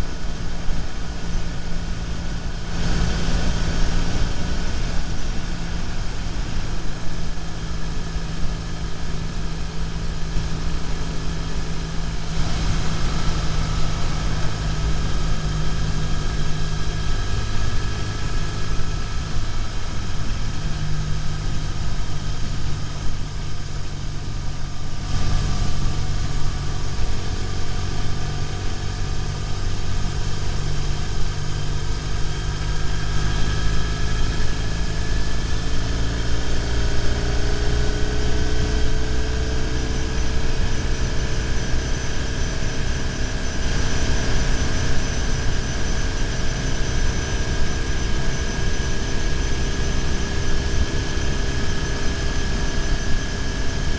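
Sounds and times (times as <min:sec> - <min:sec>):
motorcycle engine running: 0:00.0 - 0:53.9
road noise: 0:00.3 - 0:08.0, 0:08.7 - 0:20.6.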